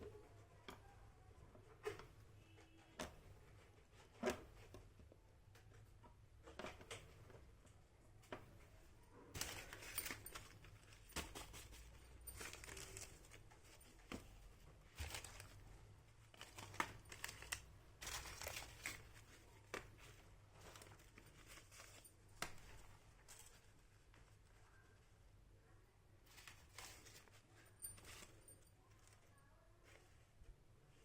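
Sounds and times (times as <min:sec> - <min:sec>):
packaging crinkling and rustling: 0:09.4 - 0:24.0, 0:26.3 - 0:30.1.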